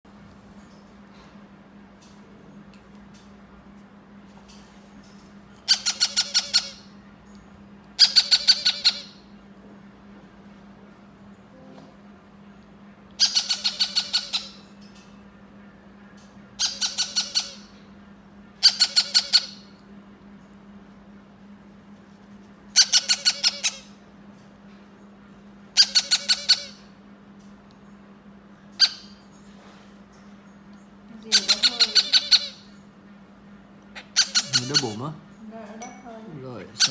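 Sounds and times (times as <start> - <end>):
parrot chick begging calls: 5.6 - 6.9, 8.0 - 9.2, 13.2 - 14.7, 16.6 - 17.7, 18.6 - 19.7, 22.7 - 24.0, 25.8 - 26.9, 28.8 - 29.2, 31.2 - 32.8, 34.0 - 35.1.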